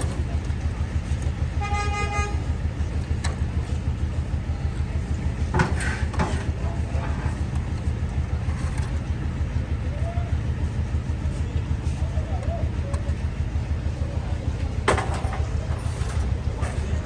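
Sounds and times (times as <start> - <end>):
traffic engines rumbling: 0.0 - 17.0
vehicle horn toot: 1.5 - 2.6.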